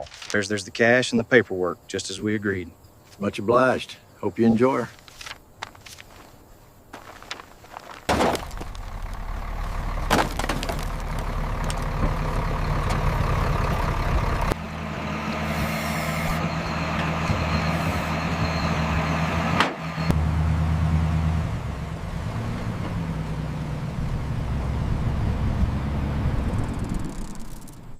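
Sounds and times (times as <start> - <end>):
car engine droning: 8.4 - 27.9.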